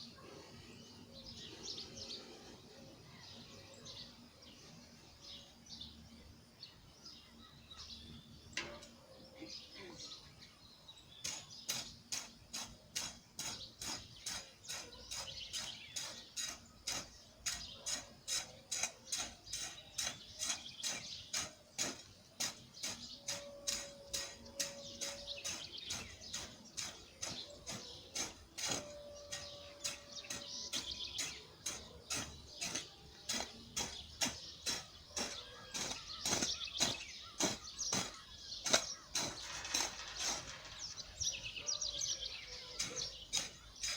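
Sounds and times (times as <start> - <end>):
birds chirping: 0.0 - 43.9
digging tool striking soil: 11.2 - 40.9, 42.8 - 43.9.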